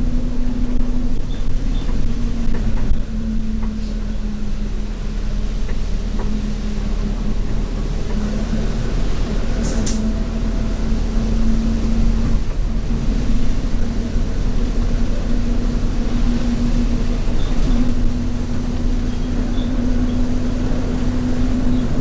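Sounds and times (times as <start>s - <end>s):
bus engine drone: 0.0s - 22.0s.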